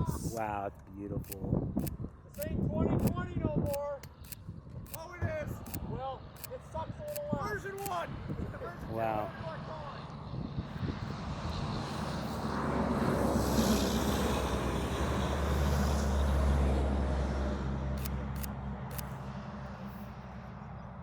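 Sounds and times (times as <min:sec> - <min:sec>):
short clicks: 0:01.2 - 0:05.8, 0:06.4 - 0:08.0, 0:18.0 - 0:19.2
vehicle passing by: 0:07.8 - 0:21.0.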